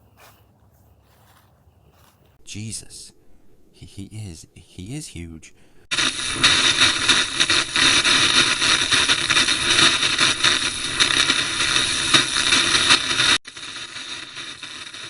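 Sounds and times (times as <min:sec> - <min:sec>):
faint hiss: 0:02.4 - 0:15.0
harsh broadcast static: 0:05.9 - 0:15.0.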